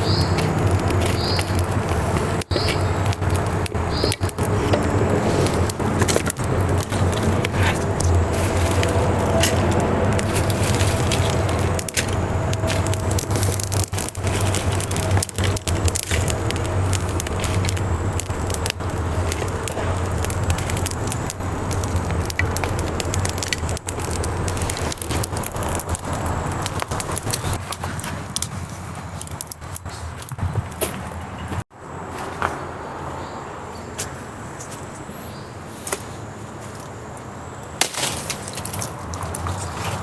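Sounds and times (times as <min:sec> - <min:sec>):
low rumble: 0:00.0 - 0:27.6
campfire crackling and popping: 0:00.0 - 0:31.7, 0:37.6 - 0:40.0.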